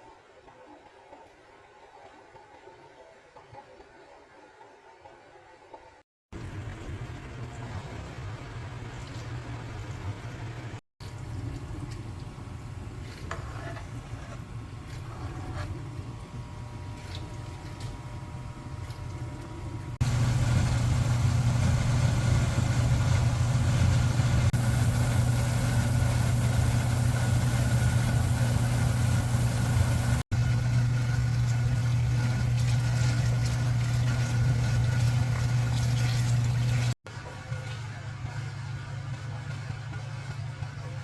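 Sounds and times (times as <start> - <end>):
motor humming: 14.6 - 36.9.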